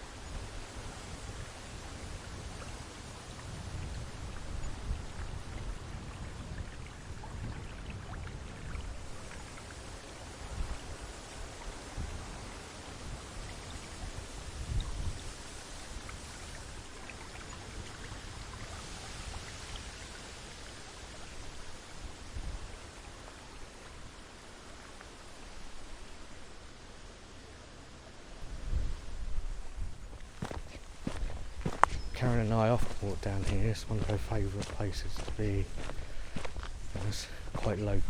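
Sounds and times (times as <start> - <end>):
wind rumbling on microphone: 0.0 - 23.8, 28.4 - 38.0
river water rushing: 30.2 - 37.9.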